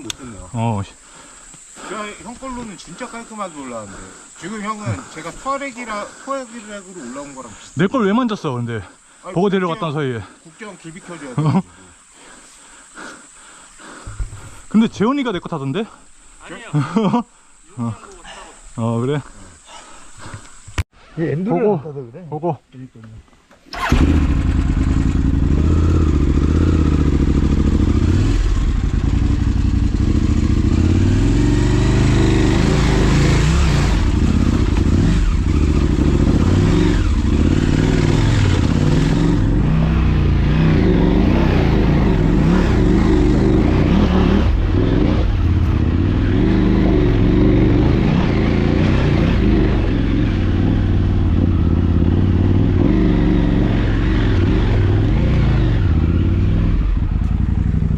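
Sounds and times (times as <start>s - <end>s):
motorcycle engine running: 23.8s - 57.9s.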